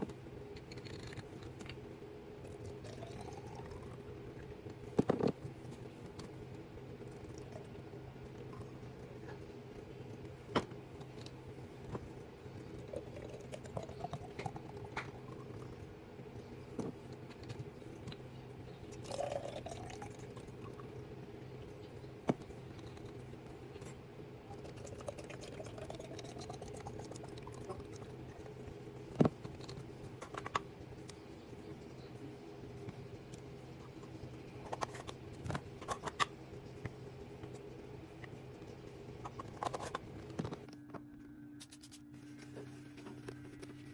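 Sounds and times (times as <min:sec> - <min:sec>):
steady low hum: 0:00.0 - 0:43.9
liquid pouring into a container: 0:19.0 - 0:20.8, 0:24.6 - 0:28.5.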